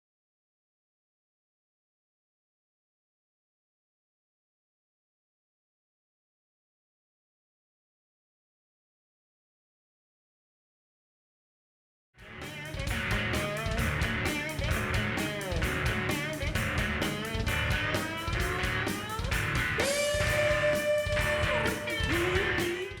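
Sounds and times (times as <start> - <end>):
lead guitar: 12.2 - 23.0
steady beat: 12.2 - 23.0.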